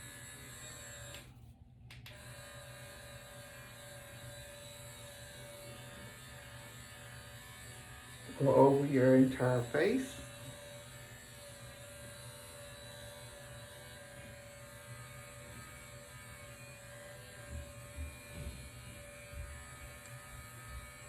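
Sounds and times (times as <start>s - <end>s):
cleansing brush buzzing: 2.1s - 21.0s.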